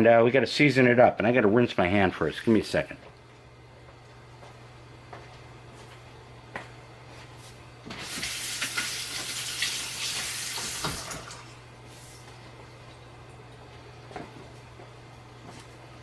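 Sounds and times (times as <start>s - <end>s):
faucet water running: 7.9s - 11.6s.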